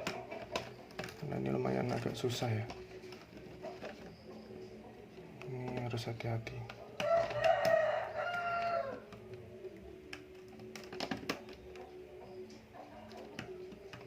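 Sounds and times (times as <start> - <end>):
plastic clips clicking: 0.0 - 4.2, 5.1 - 14.0
rooster crowing: 7.0 - 9.2.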